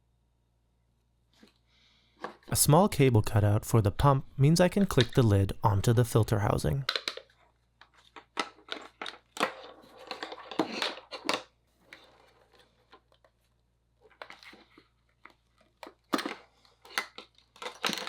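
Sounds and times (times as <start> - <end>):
plastic parts clicking: 6.8 - 11.5, 15.3 - 18.0
rustling and scraping: 7.1 - 18.0.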